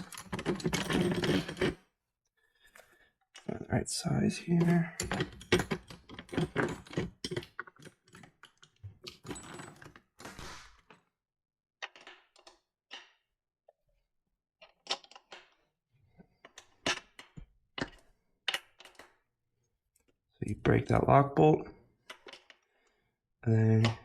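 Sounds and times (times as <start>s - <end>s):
metal tools clinking: 0.0s - 1.8s, 4.6s - 7.5s.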